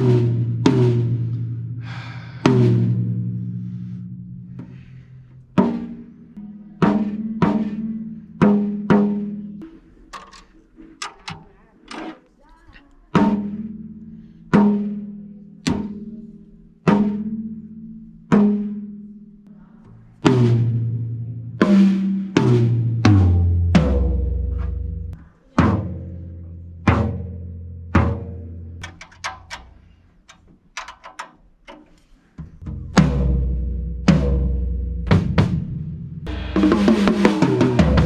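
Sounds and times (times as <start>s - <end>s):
drum toms being struck: 0.0s - 12.1s, 13.2s - 13.8s, 20.2s - 26.1s, 26.8s - 38.0s.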